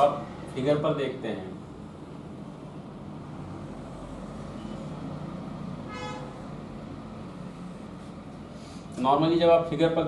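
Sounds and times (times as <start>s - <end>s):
short horn toot: 5.9s - 6.4s.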